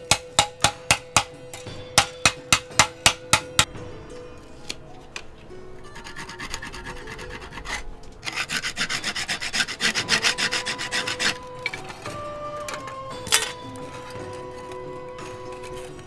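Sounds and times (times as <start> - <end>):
hand file scraping: 0.0 - 3.7, 5.8 - 12.2.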